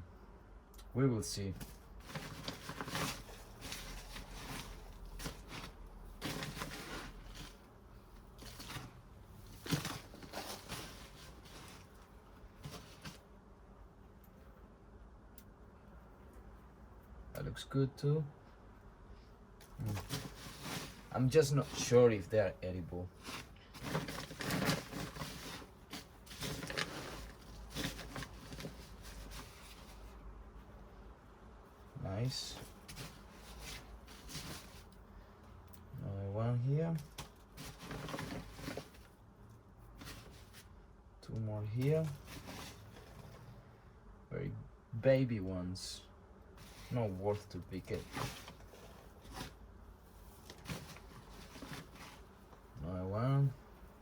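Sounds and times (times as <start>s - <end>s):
hands rustling in soil: 1.4s - 13.2s.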